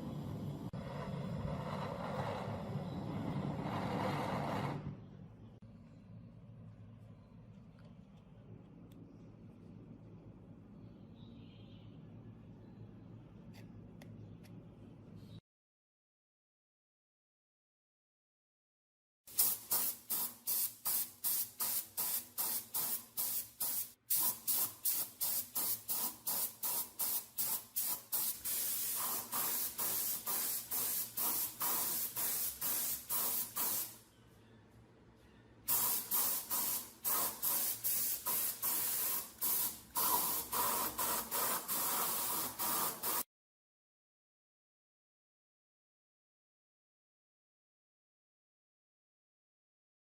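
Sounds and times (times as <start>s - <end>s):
spray paint hissing bursts: 19.3s - 34.0s, 35.7s - 43.3s.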